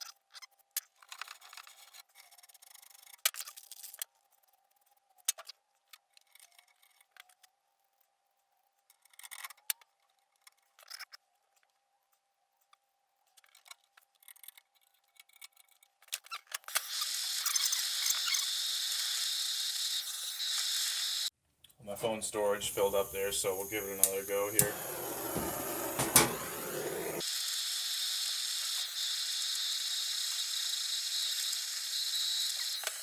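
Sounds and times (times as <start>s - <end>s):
loud steady hiss: 21.8s - 27.2s
hand tool clicks and scrapes: 24.0s - 27.2s.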